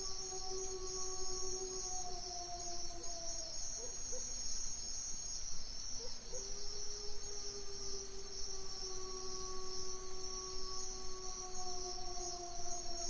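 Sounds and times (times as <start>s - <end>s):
ambient music pad: 0.0s - 3.3s, 6.6s - 13.0s
crickets chirring: 0.0s - 13.0s.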